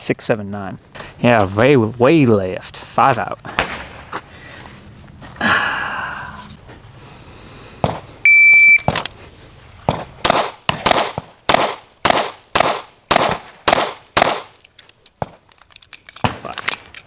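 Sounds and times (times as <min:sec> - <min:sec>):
pistol shots: 0:03.5 - 0:04.1, 0:09.9 - 0:14.6
shot timer beep: 0:08.3 - 0:08.9.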